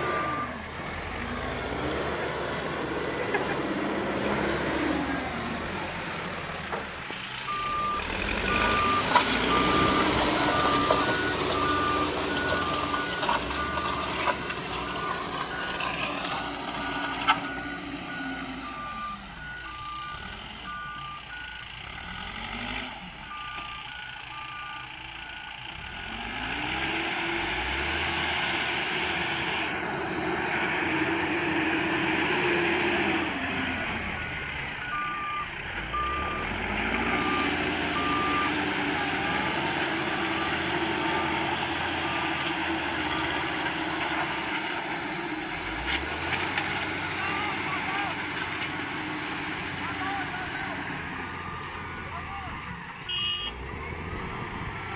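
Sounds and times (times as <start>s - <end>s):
diesel engine revving: 0.0s - 54.9s
two-tone reversing alarm beeping: 7.4s - 22.4s, 34.2s - 42.4s.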